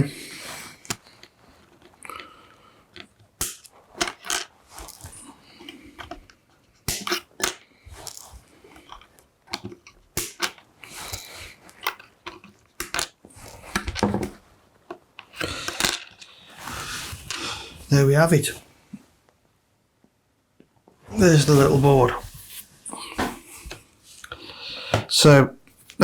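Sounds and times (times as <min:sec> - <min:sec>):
rustling handling noise: 0:10.9 - 0:19.4, 0:20.9 - 0:26.0.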